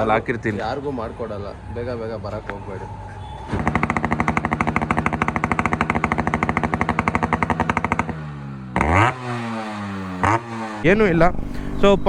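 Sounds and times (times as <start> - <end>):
two-stroke motorcycle engine popping: 3.5 - 12.0.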